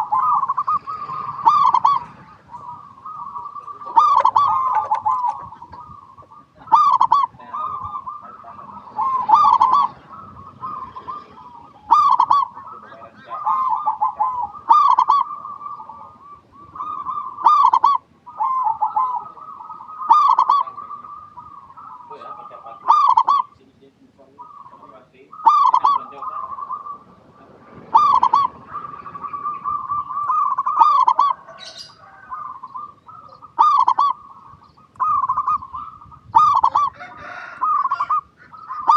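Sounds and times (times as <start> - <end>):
dove cooing: 0.0 - 38.9.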